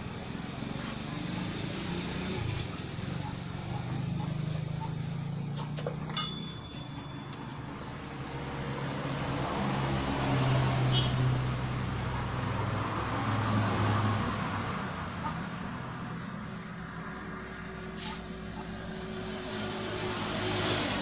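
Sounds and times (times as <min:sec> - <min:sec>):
vehicle passing: 0:00.0 - 0:06.4, 0:07.2 - 0:21.0
sharp metallic clink: 0:06.1 - 0:07.8.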